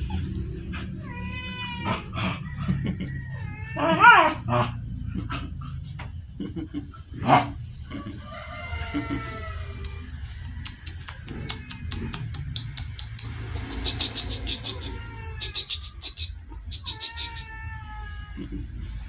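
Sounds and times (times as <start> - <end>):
dog whining: 0.0 - 6.0, 13.6 - 18.6
rapid sharp clicking: 10.4 - 14.8.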